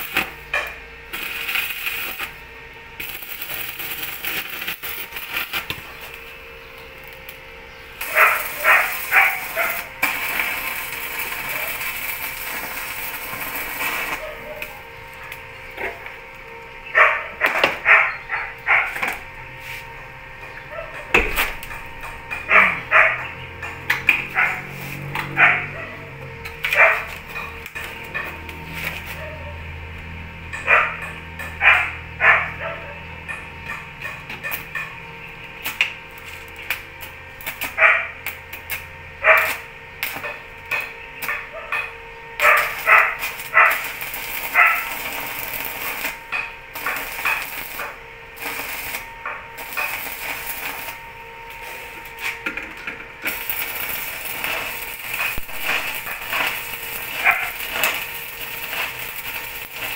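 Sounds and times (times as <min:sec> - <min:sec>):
dog barking: 0:08.1 - 0:09.9, 0:17.0 - 0:19.0, 0:20.7 - 0:21.1, 0:22.5 - 0:23.3, 0:24.3 - 0:24.7, 0:25.3 - 0:26.1, 0:26.7 - 0:27.1, 0:30.6 - 0:33.0, 0:37.8 - 0:38.2, 0:39.2 - 0:39.6, 0:41.5 - 0:43.9, 0:44.5 - 0:44.9, 0:57.1 - 0:57.8.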